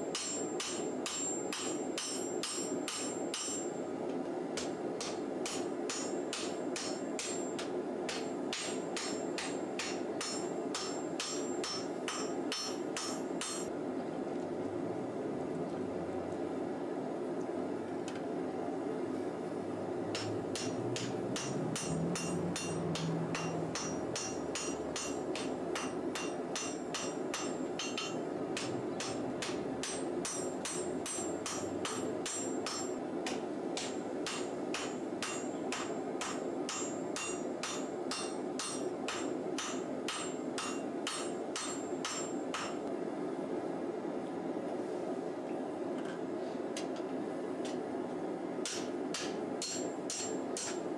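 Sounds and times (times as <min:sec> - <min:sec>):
hammer striking hot metal on anvil: 0:00.1 - 0:03.8, 0:04.6 - 0:13.7, 0:20.1 - 0:42.8, 0:48.6 - 0:50.9.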